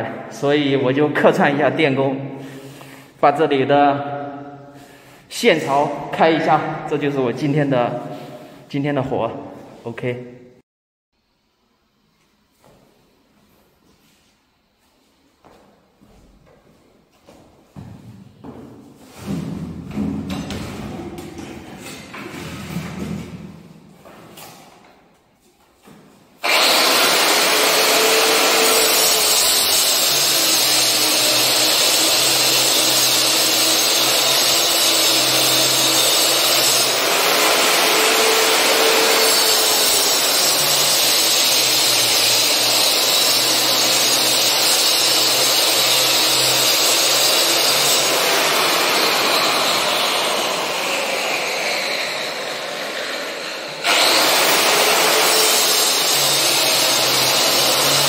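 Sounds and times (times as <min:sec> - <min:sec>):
power cutter cutting into wall: 0:26.4 - 0:58.0.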